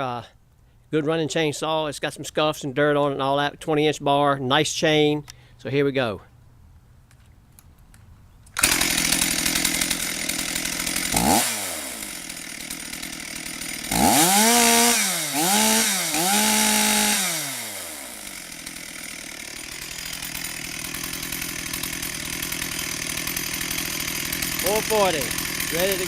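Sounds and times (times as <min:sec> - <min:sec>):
chainsaw engine idling and revving: 0:08.6 - 0:26.0.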